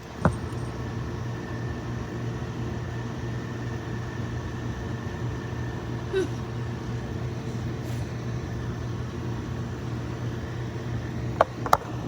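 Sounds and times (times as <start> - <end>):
mechanical hum and hiss: 0.0 - 12.0.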